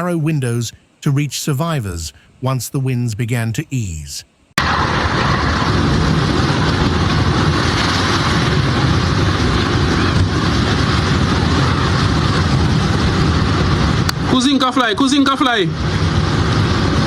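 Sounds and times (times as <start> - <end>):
strong wind rushing: 4.6 - 17.0.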